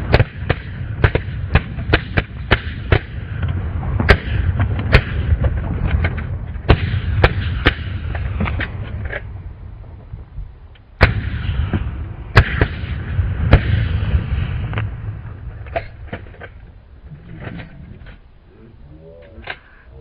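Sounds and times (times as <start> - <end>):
shotgun shots: 0.0 - 3.2, 6.7 - 8.1, 11.0 - 14.5
steady low rumble: 0.0 - 20.0.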